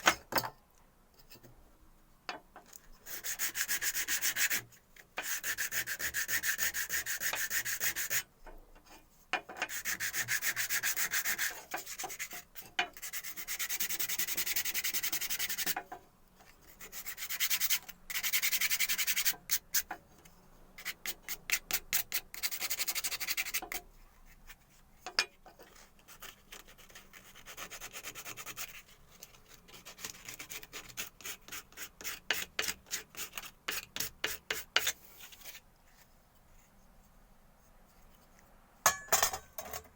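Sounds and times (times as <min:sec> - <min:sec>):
hand sanding strokes: 0:03.0 - 0:08.2, 0:09.7 - 0:15.8, 0:16.7 - 0:19.9.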